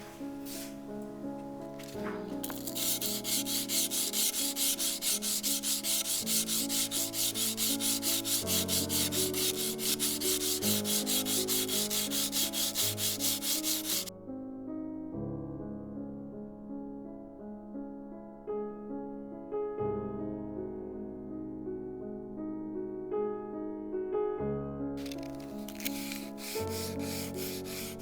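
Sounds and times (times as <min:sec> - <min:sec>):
sandpaper sanding steel: 0:00.4 - 0:00.8, 0:01.8 - 0:14.1, 0:25.0 - 0:28.0.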